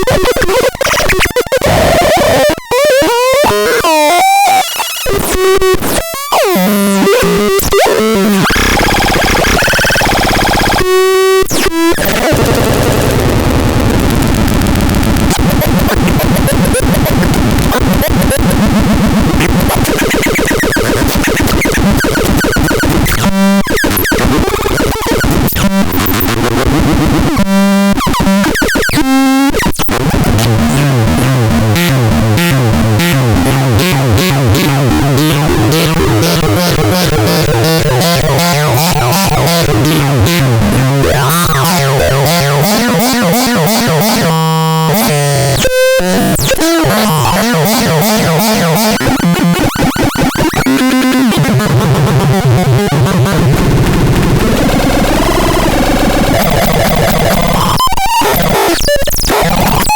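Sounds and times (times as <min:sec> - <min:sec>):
glitchy synthesizer noise music: 0:00.0 - 0:59.9
pulsing bass line: 0:12.0 - 0:20.0, 0:30.0 - 0:58.7.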